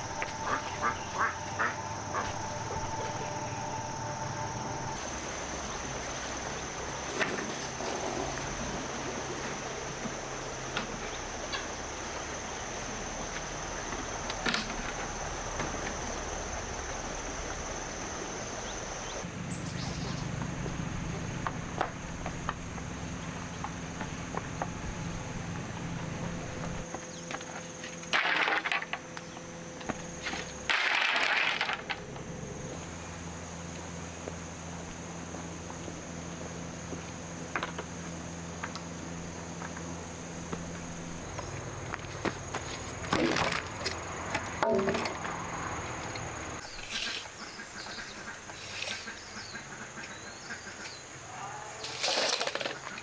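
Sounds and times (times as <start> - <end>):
high-pitched insect drone: 0.0 - 7.0.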